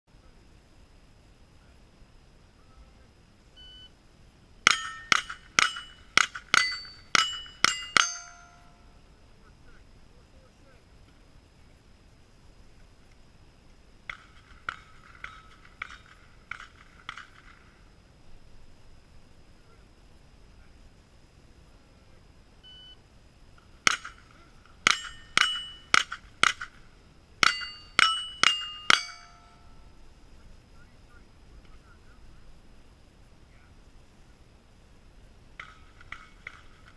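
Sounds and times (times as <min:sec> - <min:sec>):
short electronic beep: 0:03.6 - 0:03.9, 0:22.6 - 0:23.0
rifle shots: 0:04.6 - 0:08.6, 0:14.1 - 0:17.7, 0:23.8 - 0:29.7
steel plate target clanging: 0:04.6 - 0:08.9, 0:14.1 - 0:17.7, 0:23.6 - 0:29.9, 0:35.6 - 0:36.9
rapid rifle shots: 0:14.1 - 0:17.8.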